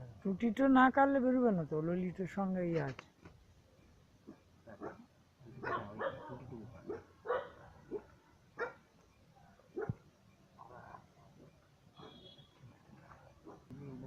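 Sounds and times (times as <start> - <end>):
dog barking: 4.2 - 8.8, 9.8 - 10.0, 12.0 - 12.3, 13.4 - 13.7.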